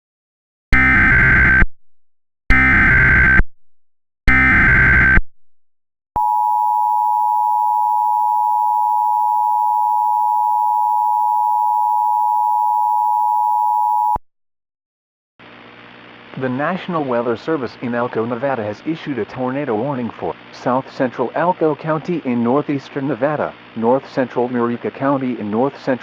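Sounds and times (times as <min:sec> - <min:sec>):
two-tone attention signal: 0:06.2 - 0:14.2.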